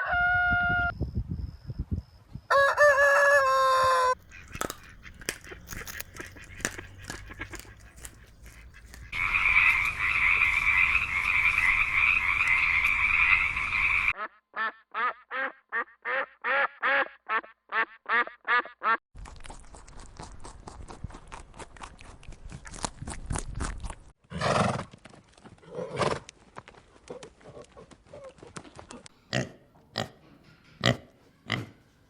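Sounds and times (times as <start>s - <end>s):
frog-like croaking chorus: 4.2s - 14.2s.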